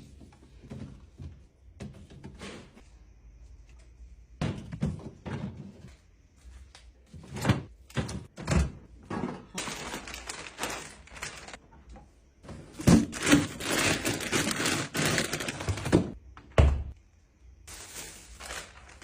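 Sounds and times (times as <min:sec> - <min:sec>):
items knocking and thudding down: 0:04.4 - 0:05.9, 0:07.2 - 0:11.6, 0:12.4 - 0:17.0.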